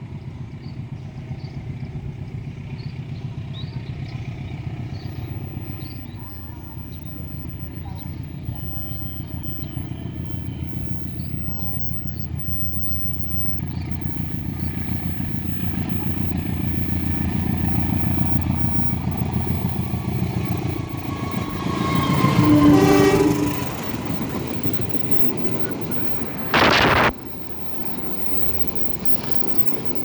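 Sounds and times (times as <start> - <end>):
train engine and wheel rumble: 0.0 - 30.0
train horn: 21.0 - 24.2.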